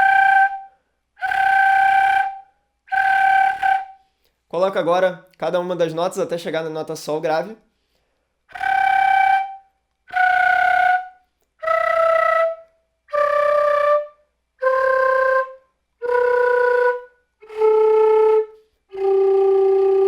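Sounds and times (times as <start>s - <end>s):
flute flutter-tongued notes: 0.0s - 4.1s, 8.5s - 20.0s.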